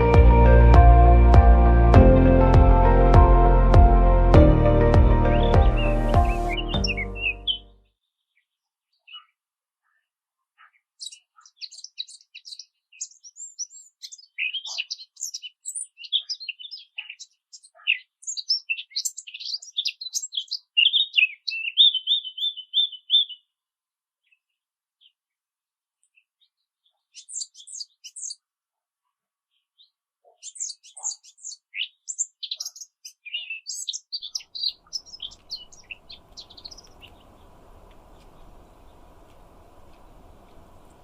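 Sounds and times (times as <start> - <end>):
songbird twittering: 5.3 - 7.8, 10.6 - 23.5, 30.4 - 41.0
faint hiss with thin hum: 35.3 - 41.0.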